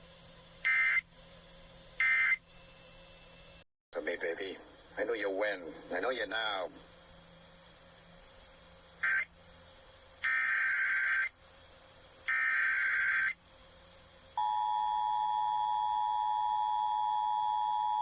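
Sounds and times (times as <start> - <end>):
buzzing digital data bursts: 10.2 - 11.3, 12.3 - 13.4.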